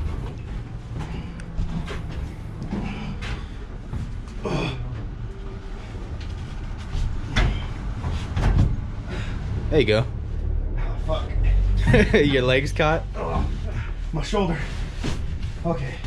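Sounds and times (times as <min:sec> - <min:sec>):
steady low rumble: 0:00.0 - 0:16.0
knocks bumps and scrapes: 0:06.1 - 0:09.7, 0:13.2 - 0:16.0.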